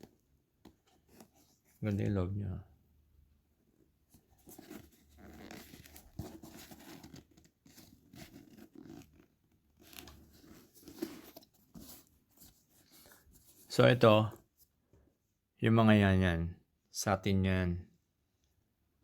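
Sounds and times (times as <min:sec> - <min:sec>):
sneaker rustling and scraping: 0:04.2 - 0:09.2, 0:09.8 - 0:13.9.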